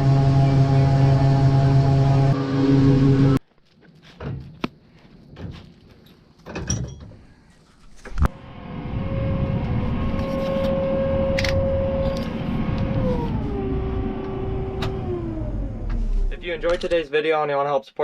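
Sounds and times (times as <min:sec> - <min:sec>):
vehicle engine running: 0:00.0 - 0:03.4.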